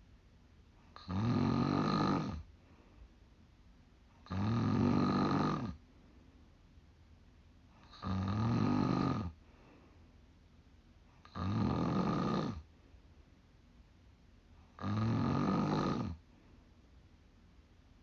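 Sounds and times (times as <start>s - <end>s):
woman snoring: 1.0s - 2.5s, 4.2s - 5.8s, 7.8s - 9.4s, 11.2s - 12.6s, 14.8s - 16.2s.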